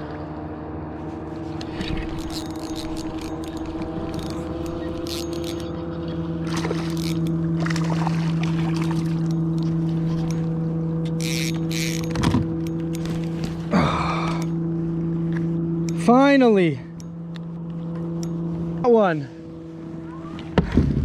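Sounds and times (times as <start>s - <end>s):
boat motor running: 0.0s - 21.0s
short splashing or rustling: 6.4s - 10.2s.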